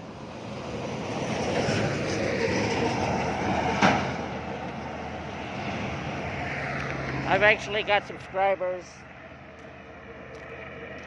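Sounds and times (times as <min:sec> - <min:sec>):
vehicle passing by: 0:00.0 - 0:11.0.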